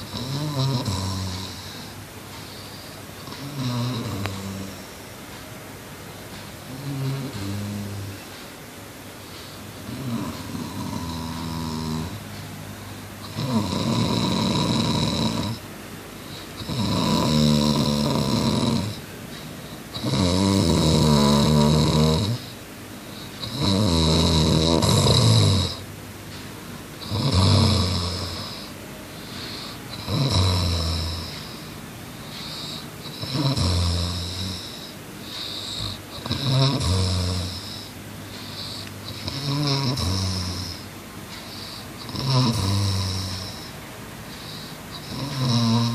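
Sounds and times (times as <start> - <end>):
boy snoring: 0.0 - 2.0, 2.6 - 4.9, 6.7 - 8.1, 9.8 - 12.2, 13.2 - 15.6, 16.6 - 19.0, 19.9 - 22.6, 23.4 - 25.8, 27.0 - 31.7, 32.3 - 40.9, 41.5 - 45.9.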